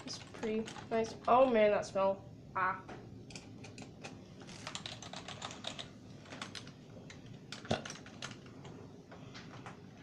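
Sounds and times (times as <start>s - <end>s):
typing on keyboard keys: 4.5s - 8.5s.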